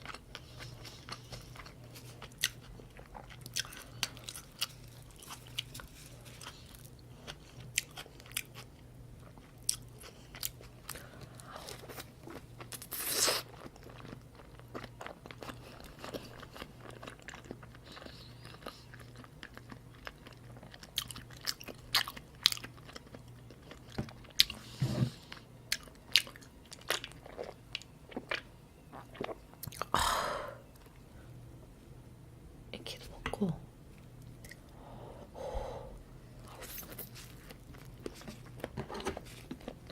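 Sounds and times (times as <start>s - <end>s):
close-miked chewing: 0.0s - 24.6s, 25.3s - 29.9s.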